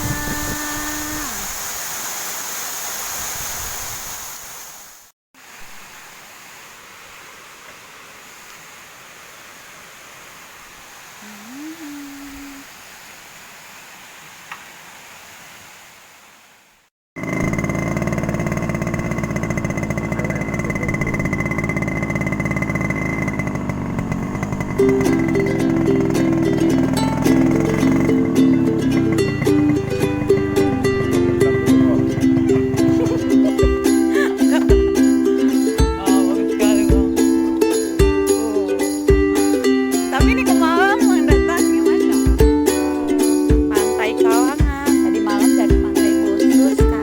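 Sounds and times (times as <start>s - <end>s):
person exclaiming: 0.0s - 1.6s, 11.2s - 12.7s, 33.0s - 34.6s, 35.8s - 37.4s, 40.1s - 42.3s, 43.7s - 47.0s
waterfall rushing: 0.0s - 16.4s
small engine running: 17.2s - 47.0s.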